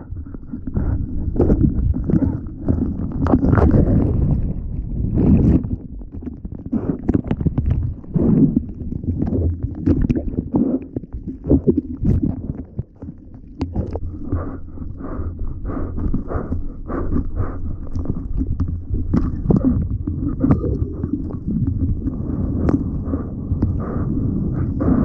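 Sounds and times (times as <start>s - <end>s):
wind buffeting microphone: 0.0s - 6.1s, 18.4s - 25.0s.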